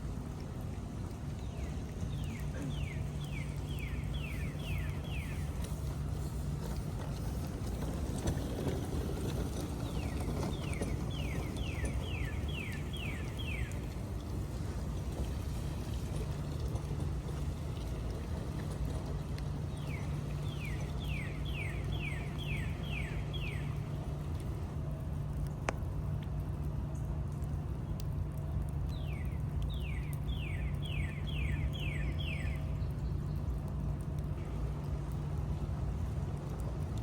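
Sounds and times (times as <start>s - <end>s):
steady low rumble: 0.0s - 37.0s
songbird whistling: 19.8s - 23.8s.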